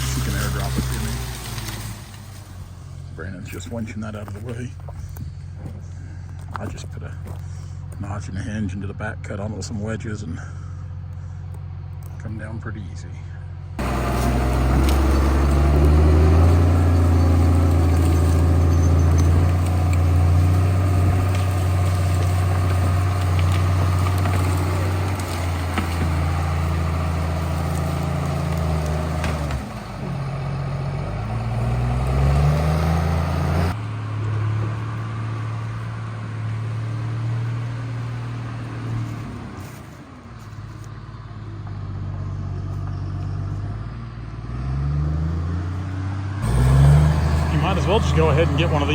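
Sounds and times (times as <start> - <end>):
second steady engine: 0.0 - 48.9
large machine engine revving: 13.7 - 39.8, 42.8 - 48.9.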